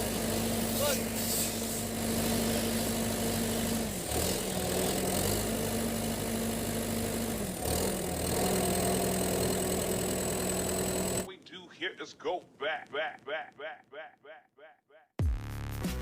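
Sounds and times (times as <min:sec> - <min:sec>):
excavator diesel engine running: 0:00.0 - 0:11.4.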